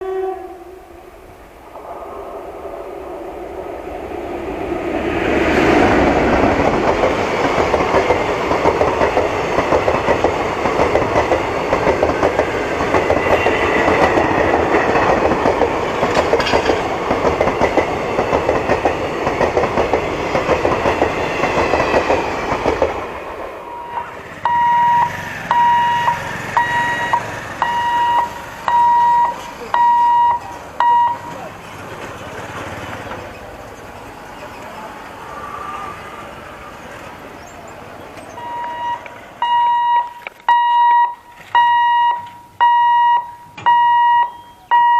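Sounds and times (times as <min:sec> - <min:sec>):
passenger train passing: 0:00.0 - 0:44.9
wheels clattering on rails: 0:05.0 - 0:35.6
high beep: 0:23.7 - 0:31.3, 0:38.4 - 0:44.9.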